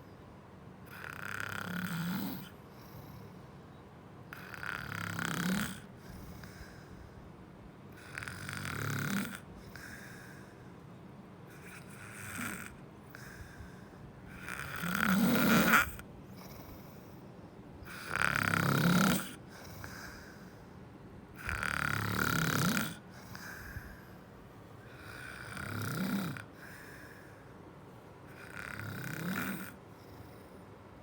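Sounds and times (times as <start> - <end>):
loud snoring: 0.9 - 3.2, 4.3 - 6.9, 7.9 - 10.5, 11.5 - 17.1, 17.8 - 20.6, 21.4 - 24.1, 24.9 - 27.3, 28.3 - 30.4
quiet breathing: 2.3 - 22.0, 22.6 - 31.0.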